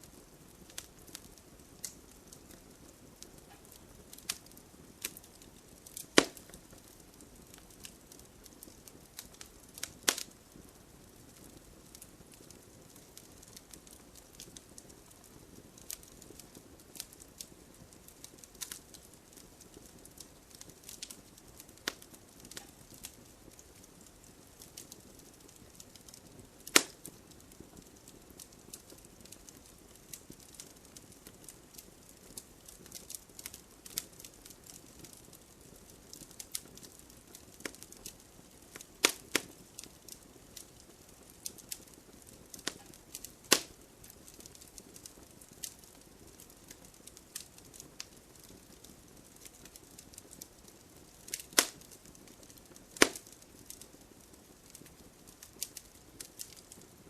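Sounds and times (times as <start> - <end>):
faint hiss: 0.0 - 57.0
logs crackling in fire: 0.0 - 57.0
sharp loud fire pops: 6.2 - 6.4, 53.0 - 53.2.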